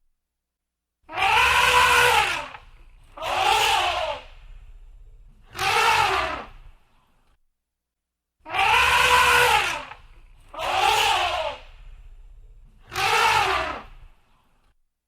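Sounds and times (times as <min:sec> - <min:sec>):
elephant trumpeting: 0:01.1 - 0:06.8, 0:08.5 - 0:14.1
low rumble: 0:02.6 - 0:05.5, 0:11.6 - 0:12.9.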